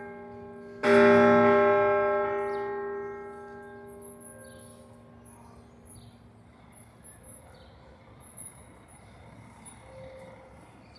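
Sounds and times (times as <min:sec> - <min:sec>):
tower bell ringing: 0:00.0 - 0:05.4
faint city hum: 0:00.0 - 0:10.9.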